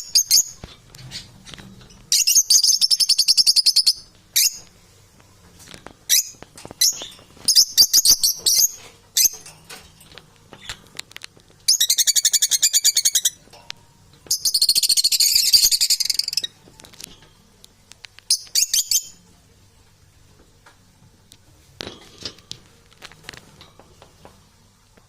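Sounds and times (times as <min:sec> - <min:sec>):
faint clicks and scuffling: 0:00.3 - 0:02.2, 0:04.6 - 0:11.8, 0:16.5 - 0:18.4, 0:19.8 - 0:25.0.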